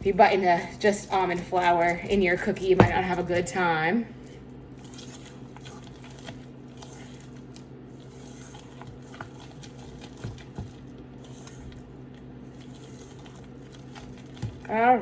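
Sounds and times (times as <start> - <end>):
steady low hum: 0.0 - 15.0
spatula stirring thick batter: 4.4 - 15.0.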